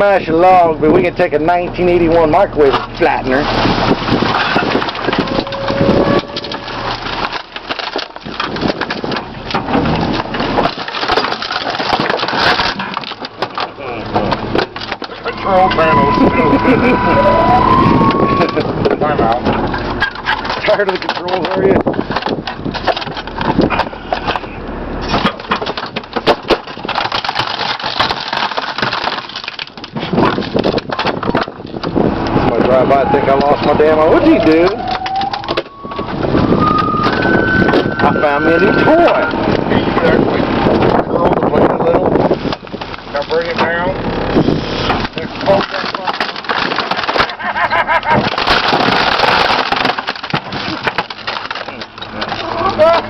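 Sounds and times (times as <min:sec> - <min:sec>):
casing cracking and crunching: 0:00.0 - 0:53.0
compactor low rumble: 0:00.0 - 0:53.0
microwave oven cracking and snapping: 0:06.4 - 0:15.2, 0:25.0 - 0:32.1, 0:44.9 - 0:47.4, 0:48.1 - 0:52.4.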